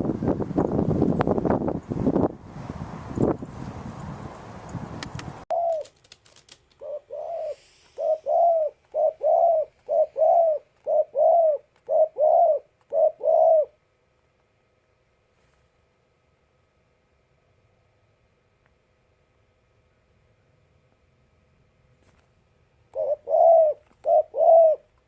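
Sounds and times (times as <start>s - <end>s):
rushing wind-like noise: 0.0s - 5.4s
dove cooing: 5.5s - 6.0s, 6.8s - 13.8s, 22.9s - 25.0s.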